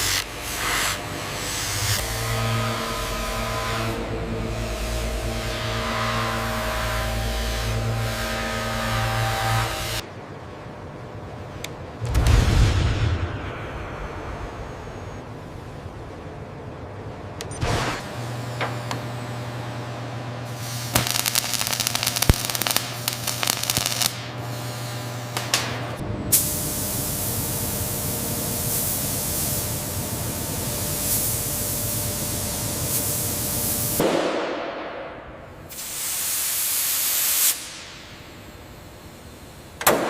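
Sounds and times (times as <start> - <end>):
spraying hiss: 35.7 - 38.1.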